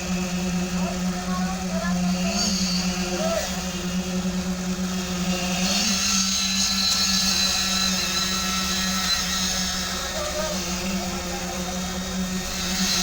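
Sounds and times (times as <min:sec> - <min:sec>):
truck engine running: 0:09.1 - 0:12.8.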